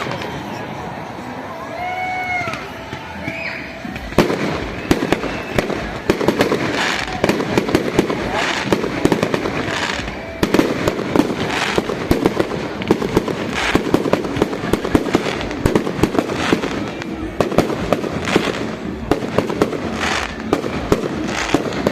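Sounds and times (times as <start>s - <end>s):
bonfire crackling and popping: 2.3s - 21.9s
fire rushing sound: 2.6s - 21.9s.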